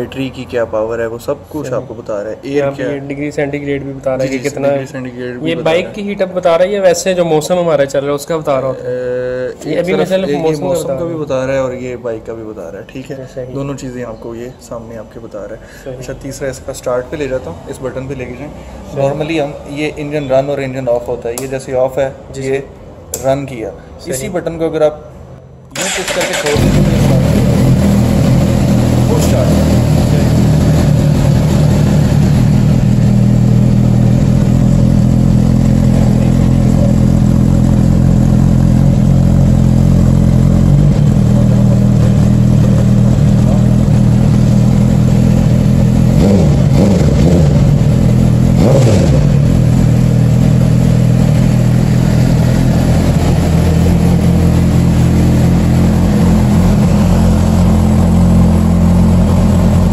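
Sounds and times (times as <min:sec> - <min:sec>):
motorcycle engine idling: 0:25.8 - 0:48.6, 0:49.2 - 0:59.9.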